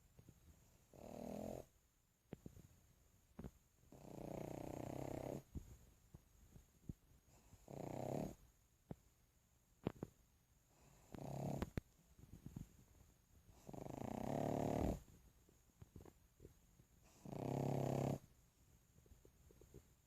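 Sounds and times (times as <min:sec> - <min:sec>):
dog snoring: 0:00.9 - 0:01.7, 0:03.9 - 0:05.5, 0:07.3 - 0:08.4, 0:10.8 - 0:11.8, 0:13.5 - 0:15.1, 0:17.0 - 0:18.3
faint clicks between breaths: 0:09.8 - 0:13.6.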